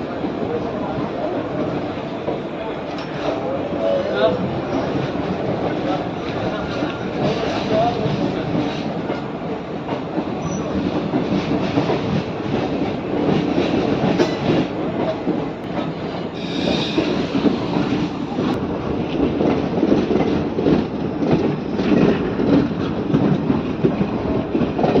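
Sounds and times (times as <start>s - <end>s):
train rumbling on rails: 0.0s - 25.0s.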